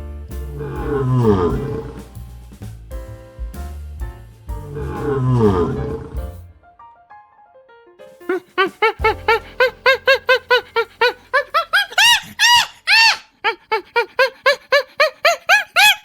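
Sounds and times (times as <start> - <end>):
animal squeaking calls: 8.3 - 16.0.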